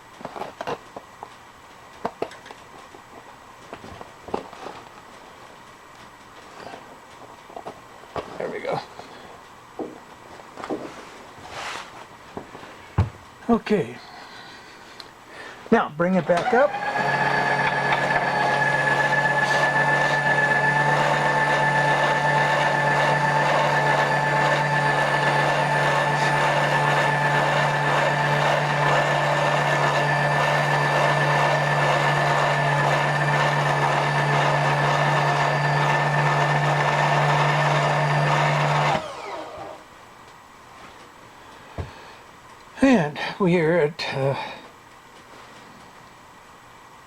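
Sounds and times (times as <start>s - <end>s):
electric motor whine and hum: 16.3s - 39.9s.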